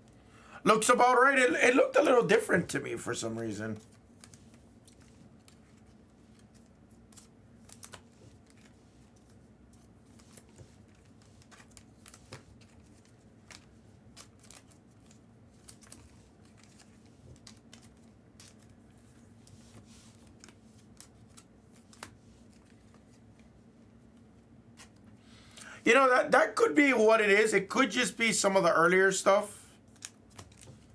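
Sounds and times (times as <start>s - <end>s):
faint steady hum: 0.0s - 30.9s
trading cards clicking and rustling: 29.9s - 30.9s.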